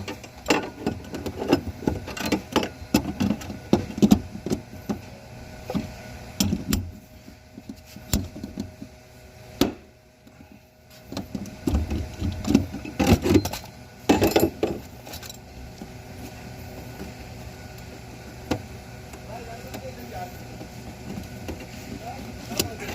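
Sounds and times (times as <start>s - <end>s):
faint steady hum: 0.0s - 22.9s.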